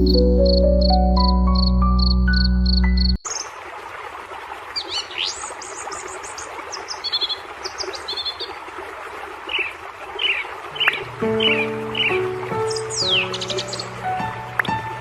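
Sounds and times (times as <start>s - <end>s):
birds chirping and whistling: 10.2s - 14.8s.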